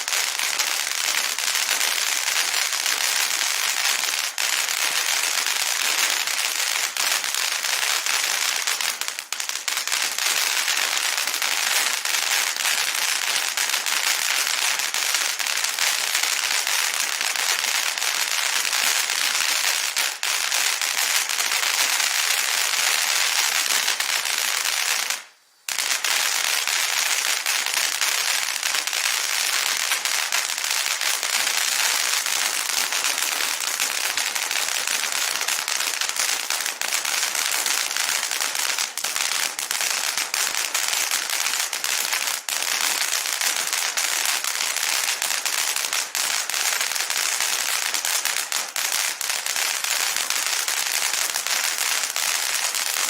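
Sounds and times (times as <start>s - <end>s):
firework hissing and crackling: 0.0s - 53.0s.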